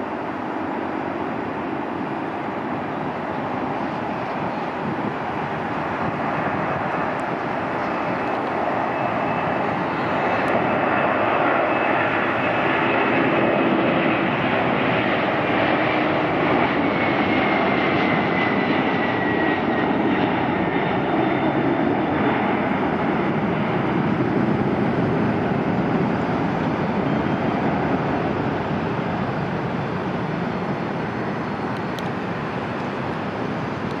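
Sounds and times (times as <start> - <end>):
faint engine whine: 0.0 - 34.0
jet engines at takeoff power: 0.0 - 34.0.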